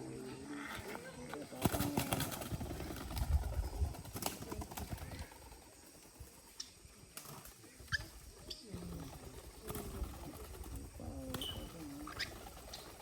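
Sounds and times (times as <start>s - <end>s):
sharp bird calls: 0.0s - 13.0s.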